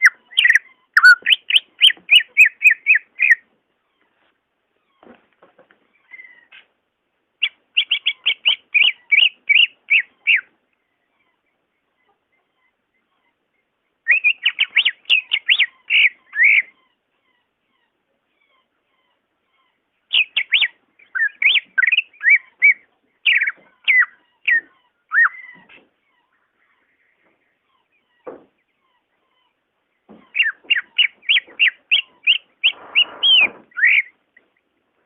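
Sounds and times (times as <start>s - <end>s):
bird singing whistled notes: 0.0s - 3.4s, 7.4s - 10.5s, 14.0s - 16.8s, 20.1s - 25.6s, 30.4s - 34.2s.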